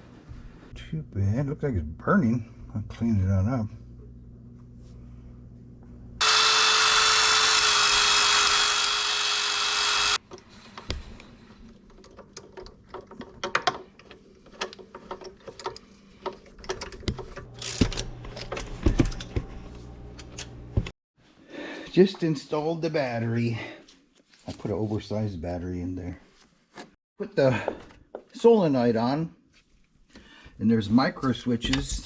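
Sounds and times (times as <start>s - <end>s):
small power tool running: 6.2s - 10.2s
clicks and knocks of parts handled: 10.3s - 19.3s.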